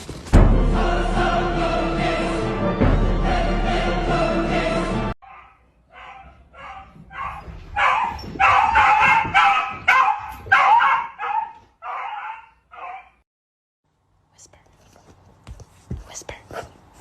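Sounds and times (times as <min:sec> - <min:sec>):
music: 0:00.3 - 0:05.2
dog barking: 0:05.2 - 0:13.2.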